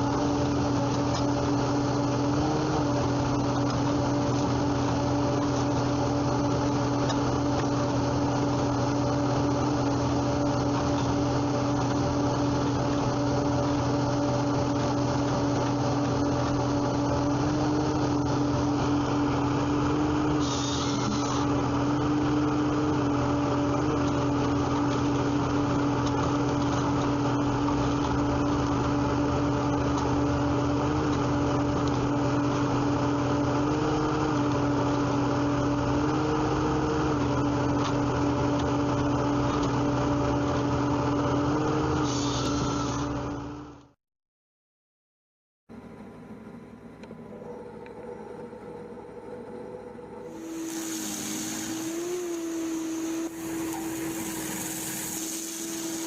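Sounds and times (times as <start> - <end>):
steady machine whine: 0.0 - 43.9, 45.7 - 56.0
wood-processing machinery drone: 0.0 - 43.9, 47.0 - 56.0
brief hiss: 50.4 - 56.0.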